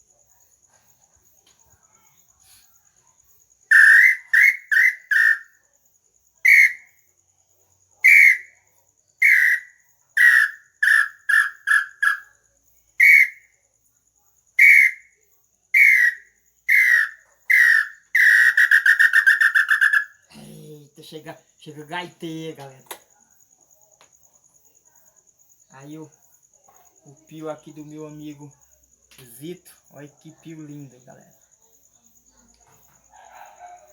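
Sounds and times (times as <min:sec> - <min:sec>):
bird-call whistle notes: 0:03.7 - 0:05.5, 0:06.5 - 0:06.9, 0:08.0 - 0:08.5, 0:13.0 - 0:13.4, 0:14.6 - 0:15.0, 0:15.8 - 0:20.1.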